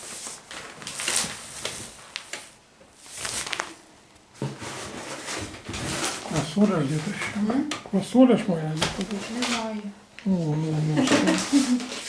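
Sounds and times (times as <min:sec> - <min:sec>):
grocery bags rustling: 0:00.0 - 0:07.3.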